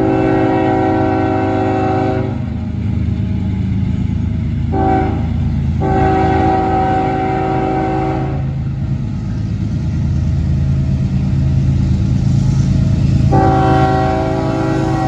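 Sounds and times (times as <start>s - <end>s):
locomotive air horn: 0.0s - 2.6s, 4.7s - 8.6s, 13.2s - 15.0s
engine low drone: 0.0s - 15.0s.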